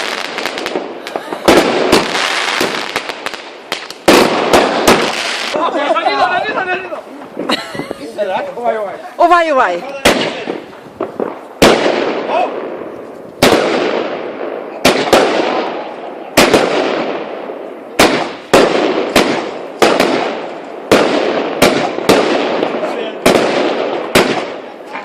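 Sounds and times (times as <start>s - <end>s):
crackling hiss: 0.0s - 5.7s
fireworks bangs: 0.0s - 25.0s.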